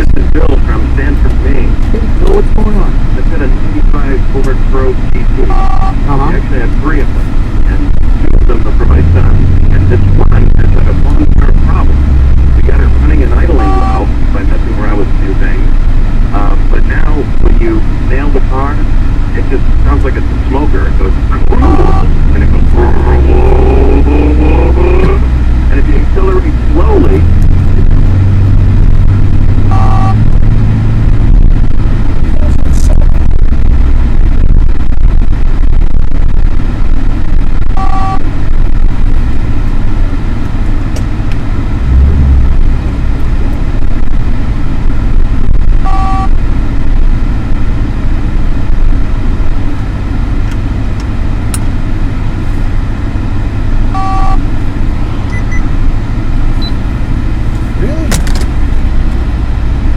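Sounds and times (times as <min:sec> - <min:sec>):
car engine and road noise: 0:00.0 - 0:59.9
two-tone beep: 0:13.4 - 0:14.1, 0:21.6 - 0:22.1, 0:29.7 - 0:30.2, 0:37.8 - 0:38.3, 0:45.8 - 0:46.3, 0:54.0 - 0:54.4, 0:55.3 - 0:55.7.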